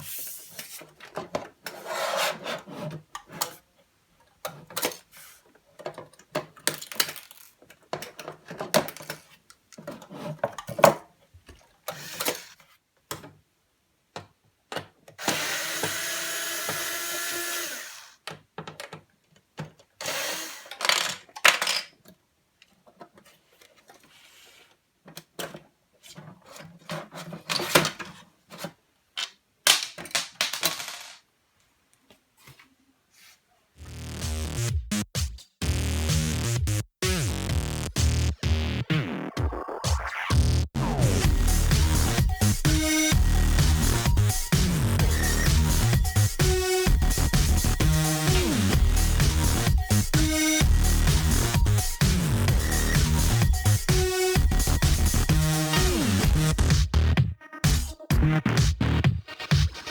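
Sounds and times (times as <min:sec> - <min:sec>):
packaging scraping and clicking: 0:04.5 - 0:11.0, 0:22.9 - 0:28.8.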